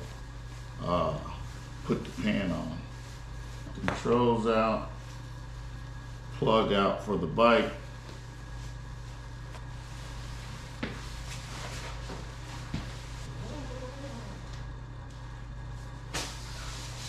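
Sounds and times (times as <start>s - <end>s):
steady low hum: 0.0s - 17.0s
clothing handling noise: 8.0s - 14.5s.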